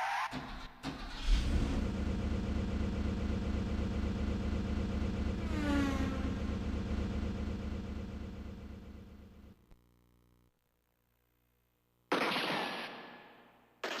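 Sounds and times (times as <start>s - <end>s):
recorded engine running: 0.4s - 9.7s.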